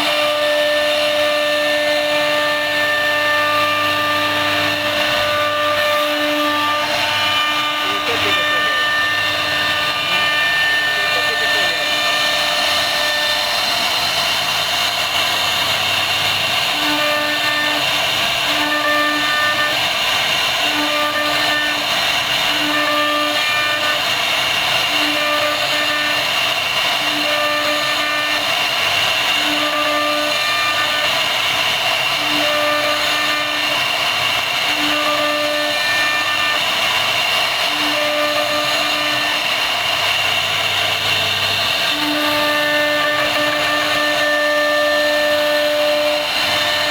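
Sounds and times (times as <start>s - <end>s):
low machine hum: 0.0s - 24.2s
router spindle whining: 0.0s - 46.9s.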